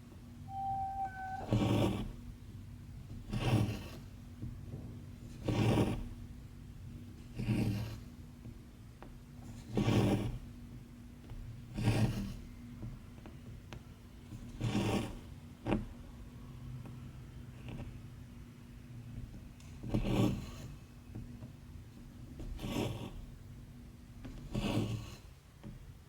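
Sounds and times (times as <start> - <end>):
thread pulled through fabric: 0.5 - 1.7.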